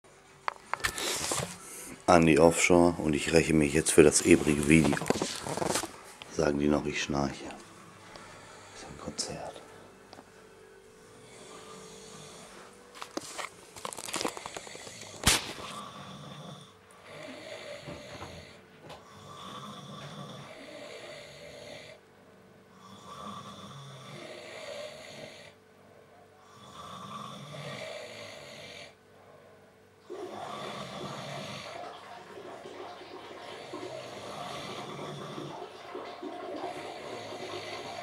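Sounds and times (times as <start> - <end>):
person snoring loudly: 11.2 - 12.7, 14.1 - 22.0, 22.7 - 25.6, 26.4 - 29.0, 30.0 - 31.9, 33.5 - 35.7, 36.6 - 38.0.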